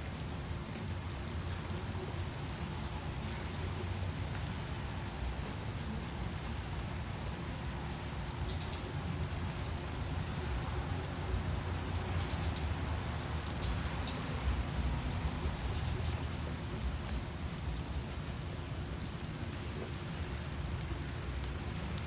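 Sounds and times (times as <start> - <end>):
steady rainfall: 0.0 - 22.0
high bird chirps: 8.4 - 8.9, 12.2 - 12.7, 13.6 - 14.3, 15.7 - 16.2.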